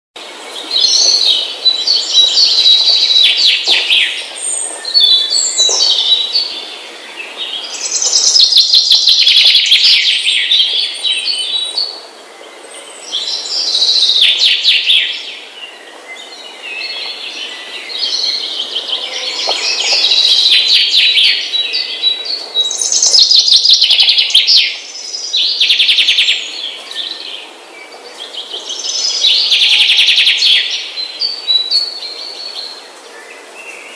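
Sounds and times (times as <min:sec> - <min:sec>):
small birds chirping and twittering: 0:00.2 - 0:33.9.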